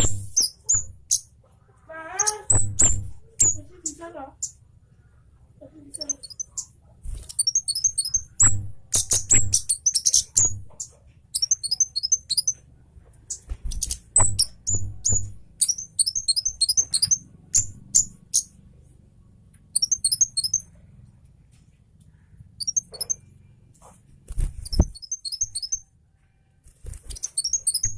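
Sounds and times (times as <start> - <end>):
songbird chirping: 0.0 - 23.8, 24.6 - 27.9
sharp clicks: 7.2 - 10.8.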